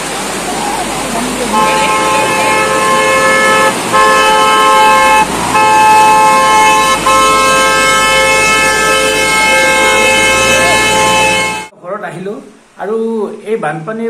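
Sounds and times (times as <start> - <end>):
two-tone vehicle horn blasts: 1.5 - 11.7.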